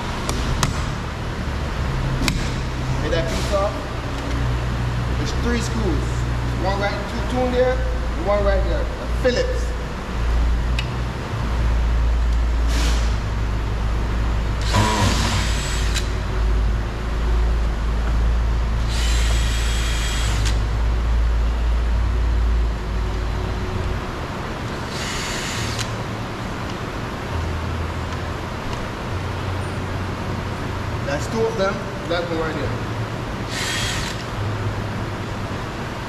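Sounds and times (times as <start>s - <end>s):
low traffic rumble: 0.0s - 36.0s
cordless drill spinning: 18.9s - 20.6s, 24.9s - 25.9s, 33.5s - 34.3s.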